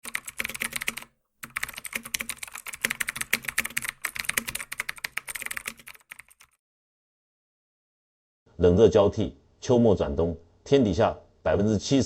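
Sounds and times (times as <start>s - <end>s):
rapid typing on keyboard: 0.0s - 6.6s.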